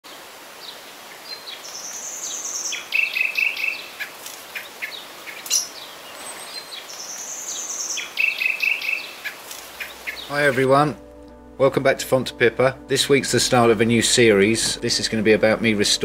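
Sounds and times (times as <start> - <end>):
background hiss: 0.1 - 16.0
songbird singing buzzy trill: 0.6 - 11.1.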